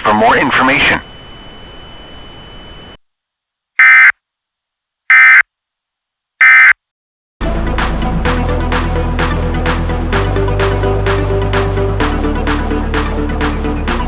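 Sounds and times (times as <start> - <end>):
electronic music: 7.4 - 14.0.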